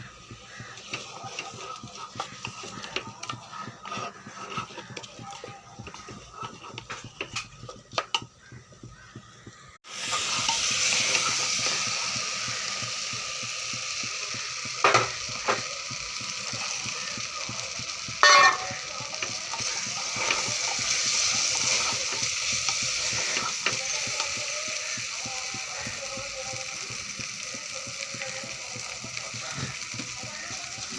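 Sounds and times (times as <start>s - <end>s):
food sizzling in hot oil: 0.0s - 30.9s
spoon knocking against pot: 0.3s - 9.3s, 14.8s - 15.6s, 18.2s - 18.8s.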